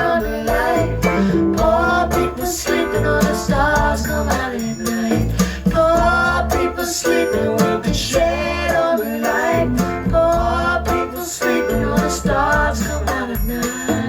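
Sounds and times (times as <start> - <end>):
pop song over speakers: 0.0 - 14.0.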